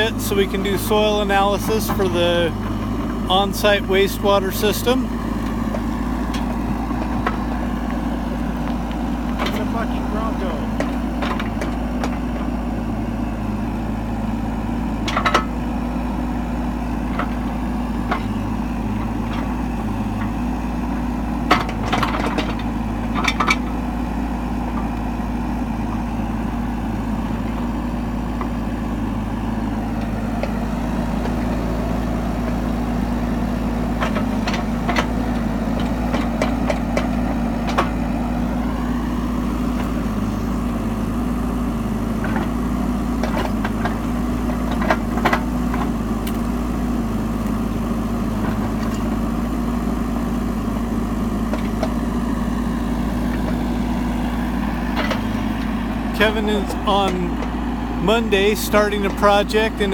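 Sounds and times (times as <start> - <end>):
excavator engine running: 0.0 - 59.9
digging knocks and clanks: 0.1 - 12.6, 15.0 - 15.6, 21.4 - 23.8, 32.4 - 38.2, 42.1 - 46.6, 54.6 - 59.9.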